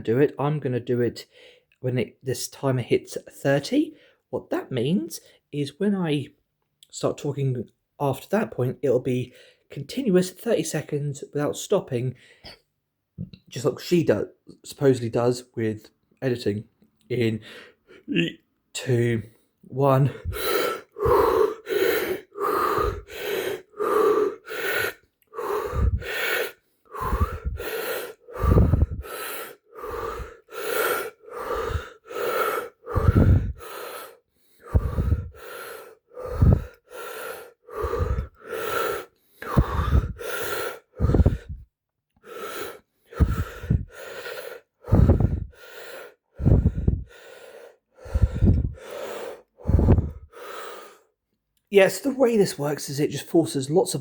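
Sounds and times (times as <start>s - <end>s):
person breathing hard and fast: 17.4s - 18.1s, 19.2s - 51.2s.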